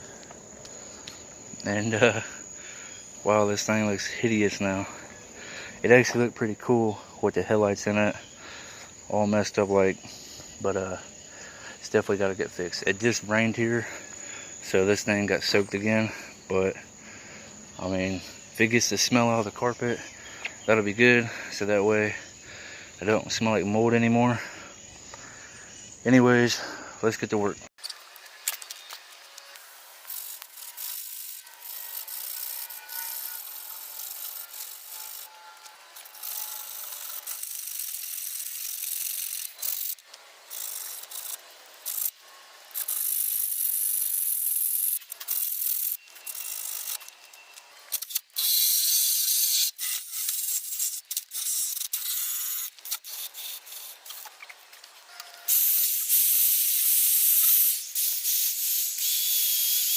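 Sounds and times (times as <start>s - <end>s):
drill wire brush scrubbing metal: 29.2s - 47.0s, 48.4s - 54.4s, 55.5s - 59.9s.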